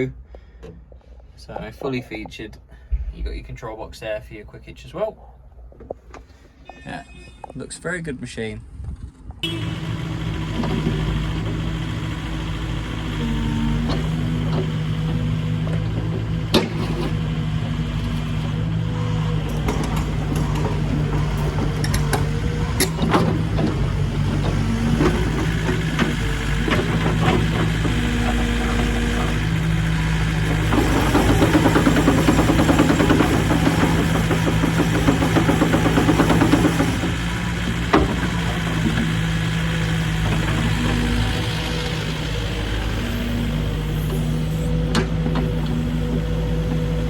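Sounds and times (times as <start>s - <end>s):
excavator diesel engine idling: 9.4s - 47.0s.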